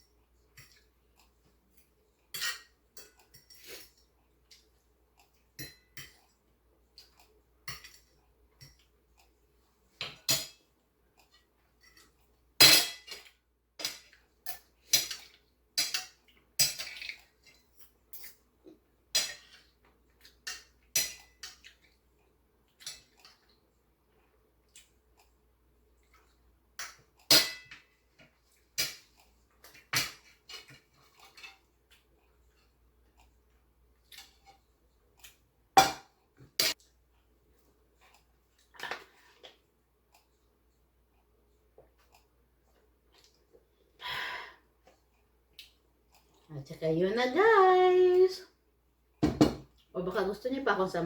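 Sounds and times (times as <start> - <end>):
utensils clinking and scraping on plate: 0.4 - 18.5, 19.1 - 22.0, 22.7 - 23.6, 26.0 - 33.4.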